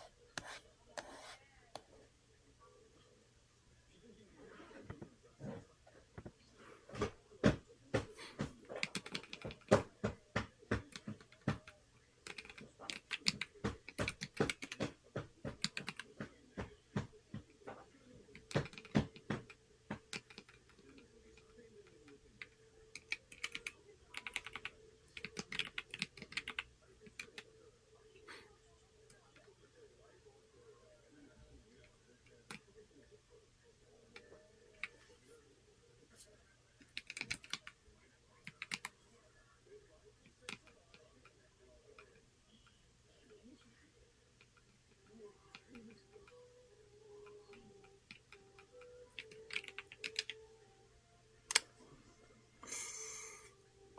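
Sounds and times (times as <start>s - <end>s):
mechanical keyboard keystrokes: 8.8s - 9.8s, 12.3s - 14.8s, 15.5s - 16.1s, 18.4s - 19.4s, 36.9s - 37.7s, 48.1s - 50.4s.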